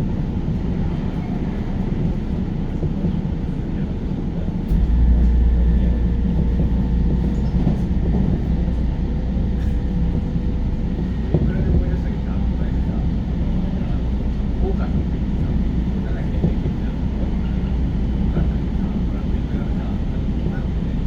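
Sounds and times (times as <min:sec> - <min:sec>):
train wheels rumbling on rail: 0:00.0 - 0:21.0
deep low rumble: 0:04.4 - 0:21.0.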